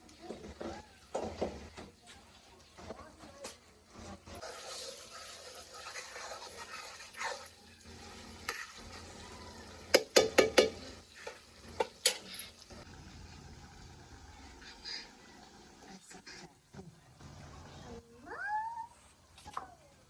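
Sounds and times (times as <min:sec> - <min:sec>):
food sizzling in a pan: 0:00.0 - 0:16.6
spoon stirring in a metal pan: 0:04.4 - 0:12.8
spoon knocking on metal pan: 0:09.9 - 0:10.9.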